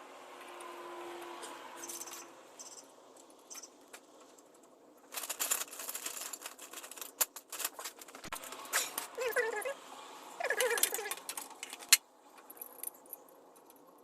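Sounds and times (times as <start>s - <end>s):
metal parts clinking: 5.1s - 9.5s, 10.4s - 14.0s.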